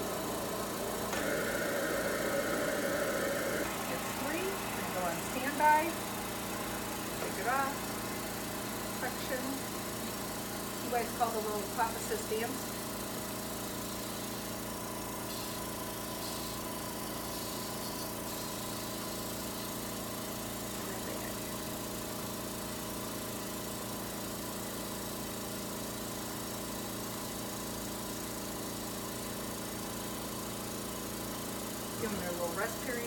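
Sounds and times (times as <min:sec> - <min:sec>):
respiratory equipment hum: 0:00.0 - 0:12.0.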